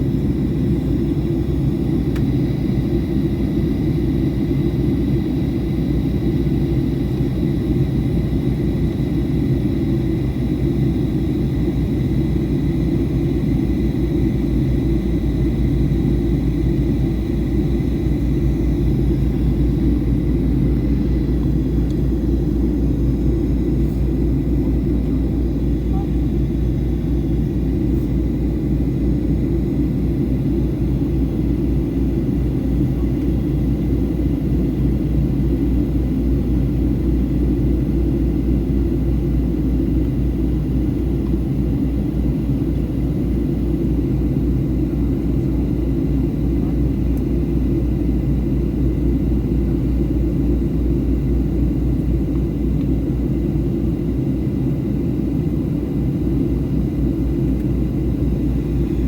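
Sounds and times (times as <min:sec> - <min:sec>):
airplane cabin rumble: 0:00.0 - 0:59.0.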